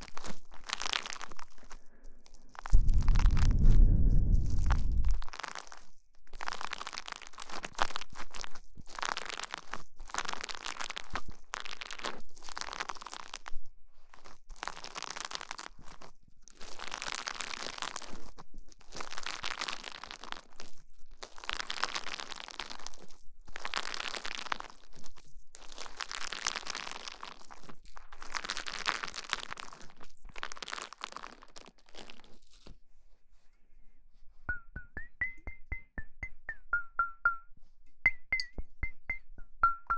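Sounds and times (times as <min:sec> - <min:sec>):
rustling crinkling swishes: 0:00.0 - 0:06.2.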